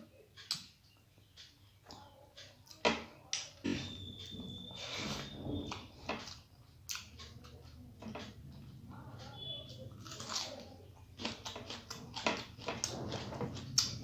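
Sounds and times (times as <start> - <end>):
person chewing: 4.7 - 7.7, 9.9 - 14.0.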